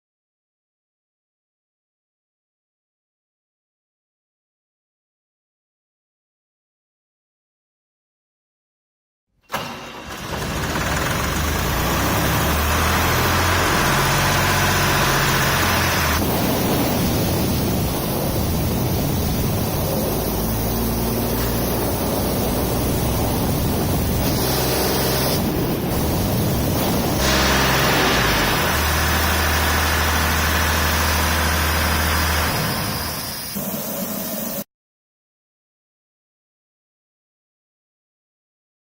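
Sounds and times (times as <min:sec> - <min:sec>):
diesel compressor running: 0:09.5 - 0:34.3.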